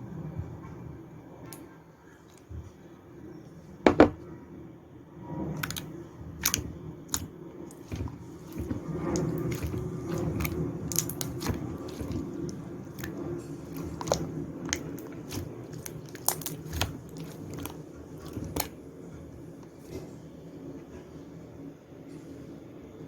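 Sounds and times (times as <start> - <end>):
low background hum: 0.0 - 23.0
slime squished by hand: 5.5 - 18.8.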